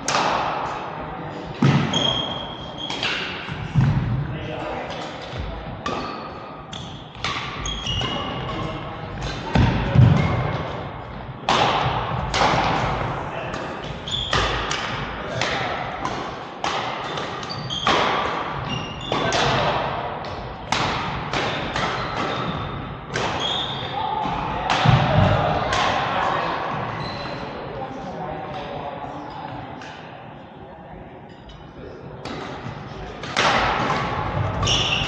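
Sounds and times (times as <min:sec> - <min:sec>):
shoe squeaks: 0:01.9 - 0:03.4, 0:06.0 - 0:08.6, 0:14.0 - 0:14.6, 0:17.1 - 0:18.0, 0:18.7 - 0:19.3, 0:23.3 - 0:23.9, 0:26.9 - 0:27.4, 0:34.6 - 0:35.0
racket striking shuttlecock: 0:11.4 - 0:23.4.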